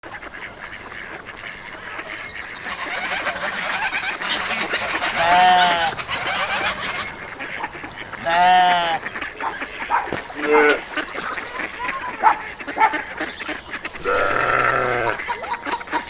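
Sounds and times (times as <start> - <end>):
small animal calls: 1.8 - 15.4
cow mooing: 8.2 - 9.0, 14.0 - 15.2.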